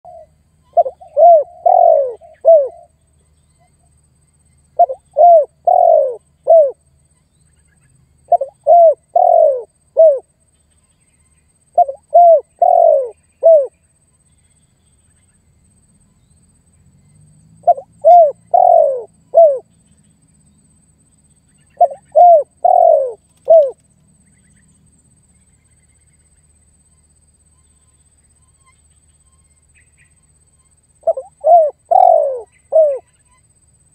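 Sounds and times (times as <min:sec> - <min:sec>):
dove cooing: 0:00.1 - 0:03.0, 0:04.8 - 0:06.8, 0:08.3 - 0:10.3, 0:11.7 - 0:13.8, 0:17.6 - 0:19.7, 0:21.8 - 0:23.8, 0:31.0 - 0:33.1.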